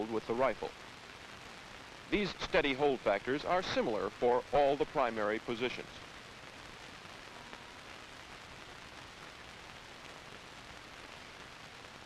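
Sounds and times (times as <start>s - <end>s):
film soundtrack hiss: 0.0s - 12.0s.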